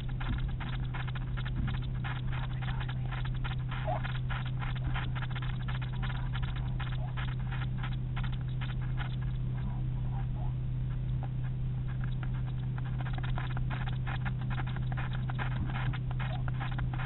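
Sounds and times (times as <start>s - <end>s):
steady low hum: 0.0s - 17.0s
bird scratching and clicking: 0.2s - 9.4s, 11.9s - 17.0s.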